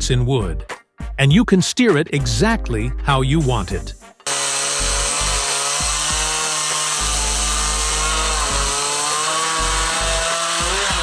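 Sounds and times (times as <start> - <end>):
background music: 0.0 - 11.0
chainsaw cutting wood: 4.2 - 11.0.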